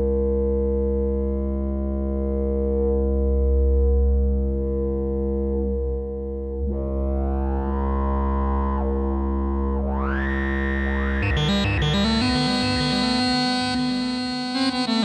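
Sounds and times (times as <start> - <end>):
bass synthesizer sustained note: 0.0 - 15.0
choppy arpeggiated synth pattern: 10.1 - 15.0.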